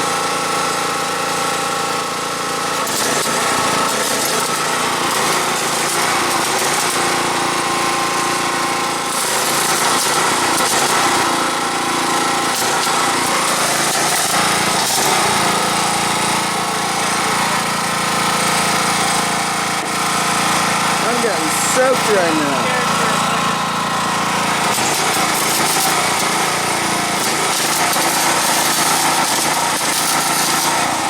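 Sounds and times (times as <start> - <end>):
engine drone: 2.8 - 31.0
welding arc crackling and hissing: 2.9 - 7.0, 21.0 - 23.3, 24.5 - 31.0.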